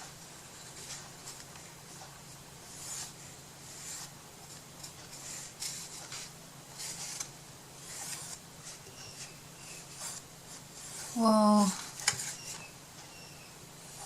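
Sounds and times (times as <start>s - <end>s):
low steady hum: 0.0s - 14.0s
light rubbing strokes: 2.7s - 12.7s.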